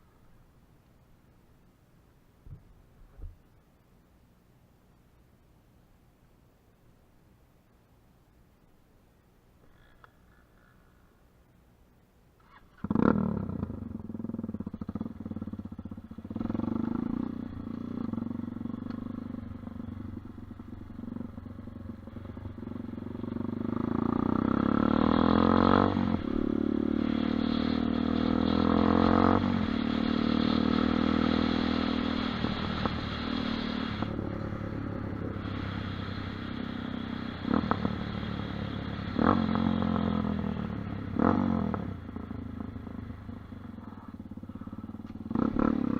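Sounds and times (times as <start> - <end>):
dirt bike engine revving: 12.7 - 19.2, 23.3 - 42.0, 43.9 - 45.9.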